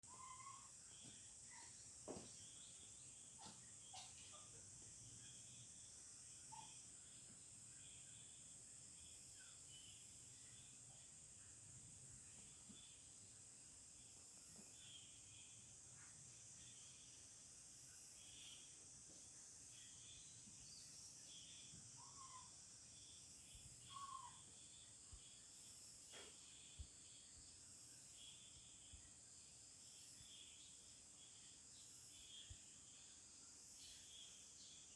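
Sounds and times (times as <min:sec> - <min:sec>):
bird chirping: 0:00.0 - 0:11.6, 0:18.2 - 0:29.2
steady high hiss: 0:00.2 - 0:34.9
low bird calls: 0:23.9 - 0:24.4.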